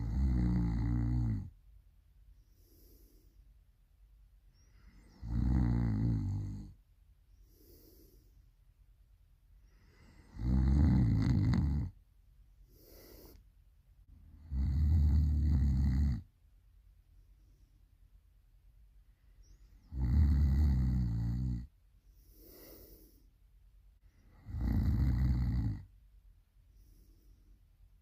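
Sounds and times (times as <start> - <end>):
person snoring loudly: 0.0 - 1.5, 5.1 - 6.7, 10.2 - 11.9, 14.4 - 16.2, 19.9 - 21.7, 24.4 - 25.8.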